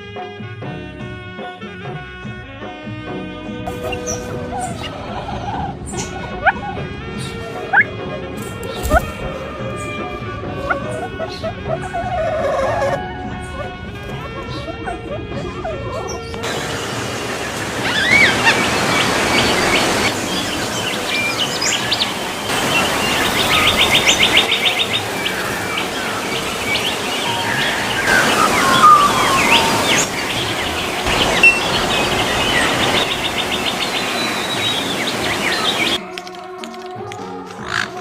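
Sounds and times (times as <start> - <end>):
rapid bird trill: 3.7 - 5.2, 15.9 - 36.0
birds chirping and whistling: 3.7 - 36.1
outdoor ambience hiss: 16.4 - 36.0.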